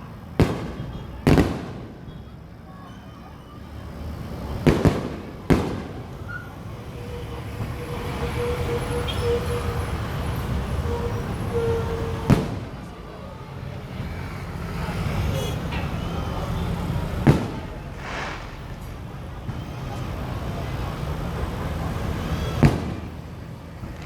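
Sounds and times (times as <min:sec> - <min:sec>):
fireworks bangs with echoes: 0:00.3 - 0:02.3, 0:04.2 - 0:06.8, 0:11.6 - 0:12.9, 0:16.8 - 0:21.3, 0:22.0 - 0:24.0.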